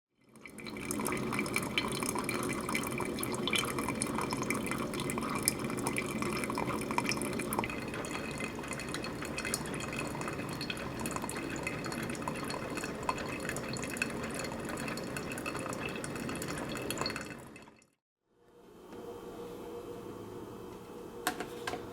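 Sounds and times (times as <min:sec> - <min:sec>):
water pouring and trickling: 0:00.1 - 0:18.0
water drips and splashes: 0:00.4 - 0:18.0.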